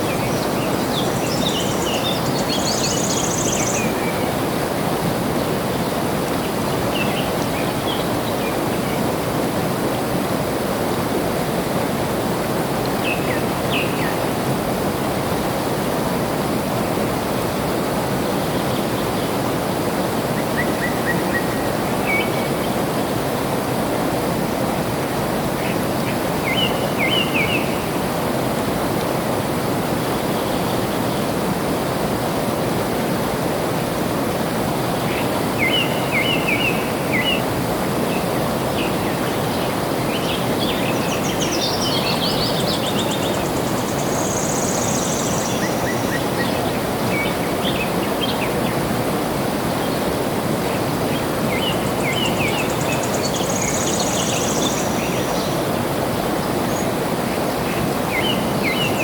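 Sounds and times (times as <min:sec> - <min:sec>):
flowing water rushing: 0:00.0 - 0:59.0.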